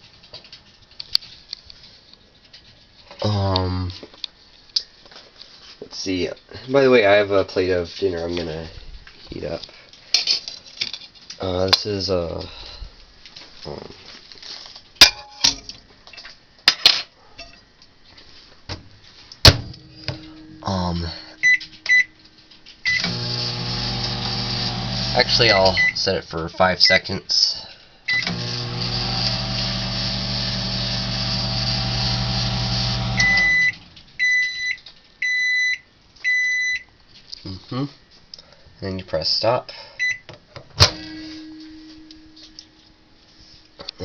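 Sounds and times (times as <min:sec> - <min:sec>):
microwave beep: 0:21.4 - 0:22.2, 0:22.8 - 0:26.0, 0:28.1 - 0:36.9, 0:40.0 - 0:40.3
microwave oven humming: 0:22.8 - 0:26.0, 0:28.1 - 0:34.0.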